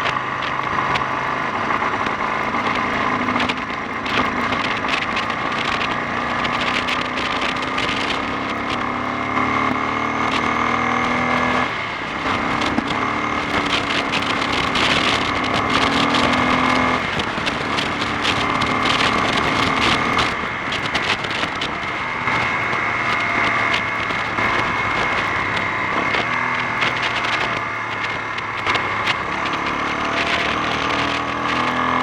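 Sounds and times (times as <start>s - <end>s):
motorcycle engine pulling: 0.0s - 32.0s
wind buffeting microphone: 0.0s - 32.0s.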